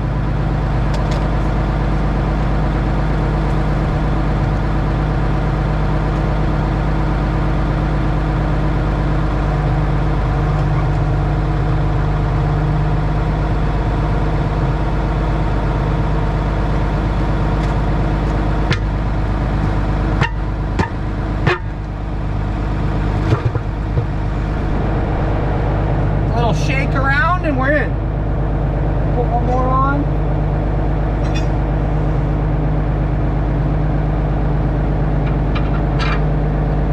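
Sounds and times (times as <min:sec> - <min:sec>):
diesel engine idling: 0:00.0 - 0:36.9
sharp metallic clanks: 0:31.2 - 0:31.6.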